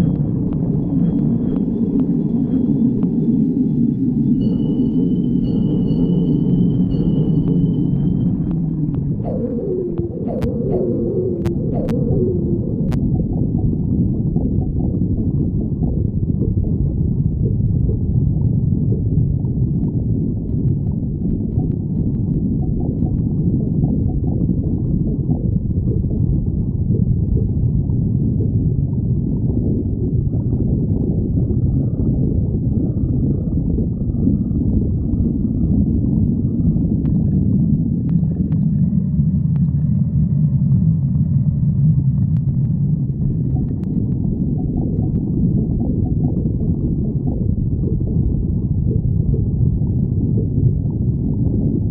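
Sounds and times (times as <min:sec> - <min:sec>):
faint high whining tones: 0:00.0 - 0:14.9
stomach rumbling and gurgling: 0:00.0 - 0:51.9.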